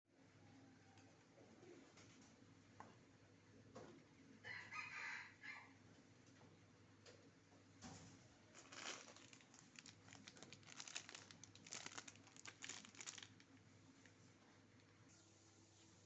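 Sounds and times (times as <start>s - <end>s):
plastic packet crinkling and tearing: 8.5s - 13.6s.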